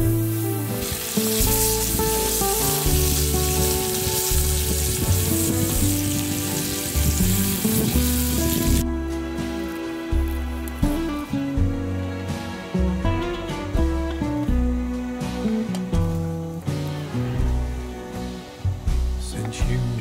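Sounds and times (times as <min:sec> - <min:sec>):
food sizzling in a pan: 0:00.0 - 0:08.8
mellow guitar music: 0:00.0 - 0:20.0.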